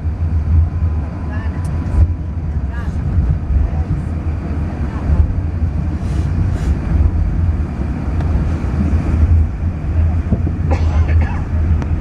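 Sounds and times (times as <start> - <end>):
airplane cabin rumble: 0.0 - 12.0.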